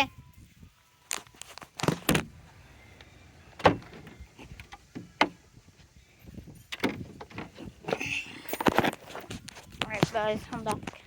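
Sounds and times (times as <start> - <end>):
vehicle door clunks: 3.0 - 5.5, 6.7 - 8.0.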